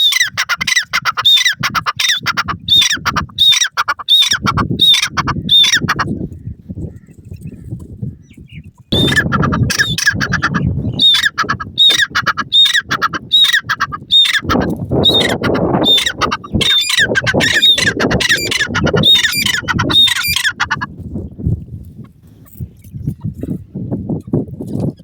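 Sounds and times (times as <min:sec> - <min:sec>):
bird calling: 0:00.0 - 0:06.1, 0:08.5 - 0:20.9.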